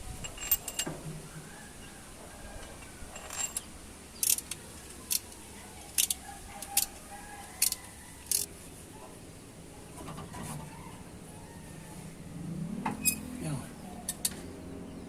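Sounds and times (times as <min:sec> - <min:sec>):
metallic clinks of tools: 0:03.1 - 0:05.3.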